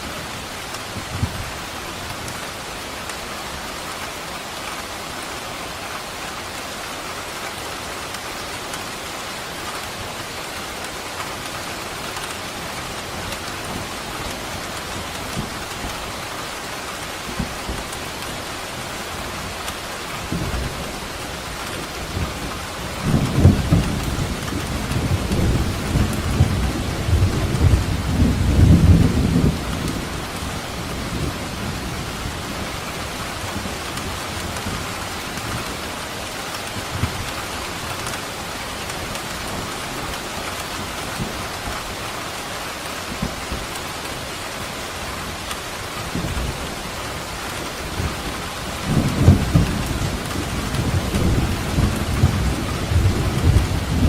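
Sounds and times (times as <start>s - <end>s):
steady rain falling: 0.0s - 54.0s
thunder rumbling: 20.3s - 37.3s, 46.0s - 54.0s.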